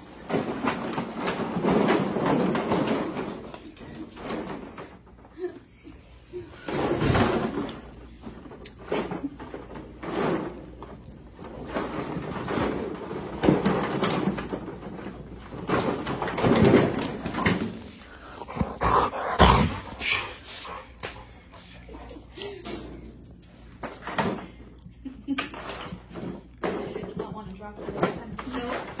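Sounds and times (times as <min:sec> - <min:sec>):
dog making odd vocal noises: 0:18.2 - 0:21.0.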